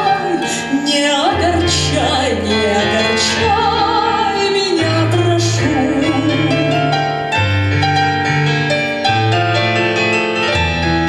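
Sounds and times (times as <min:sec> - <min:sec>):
piano melody: 0:00.0 - 0:11.0.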